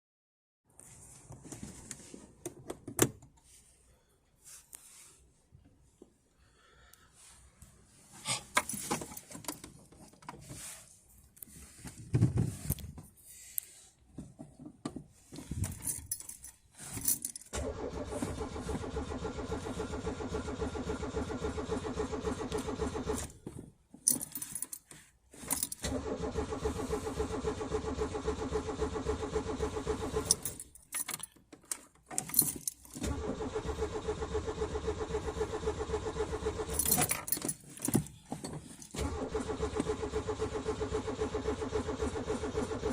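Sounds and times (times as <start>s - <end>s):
keys jangling and clicking: 15.4s - 17.5s, 24.0s - 25.8s, 30.2s - 33.0s, 36.7s - 39.0s
car starter cranking engine: 17.5s - 23.4s, 25.6s - 30.7s, 32.2s - 37.4s, 38.9s - 42.9s.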